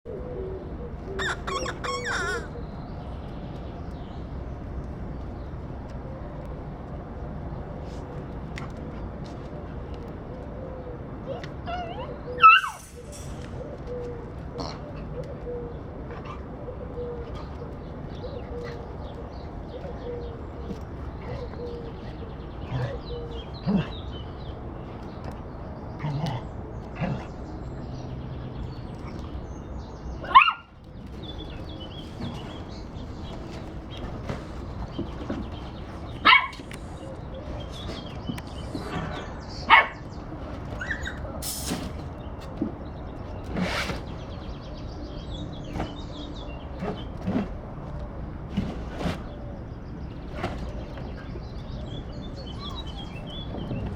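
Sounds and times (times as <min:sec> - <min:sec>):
puppies whining and squeaking: 0:01.0 - 0:02.6, 0:11.3 - 0:13.8, 0:33.2 - 0:41.4, 0:52.4 - 0:53.9
puppy yapping: 0:01.2 - 0:02.6, 0:11.3 - 0:13.0, 0:36.2 - 0:37.1, 0:39.6 - 0:40.1
short bumps: 0:31.0 - 0:44.6.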